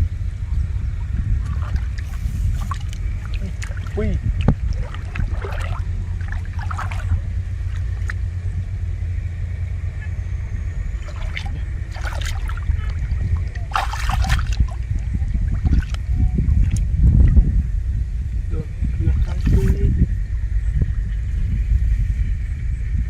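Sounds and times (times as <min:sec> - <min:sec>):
steady low rumble: 0:00.0 - 0:23.0
water splashing and sloshing: 0:01.2 - 0:08.3, 0:10.9 - 0:17.4, 0:18.8 - 0:19.8.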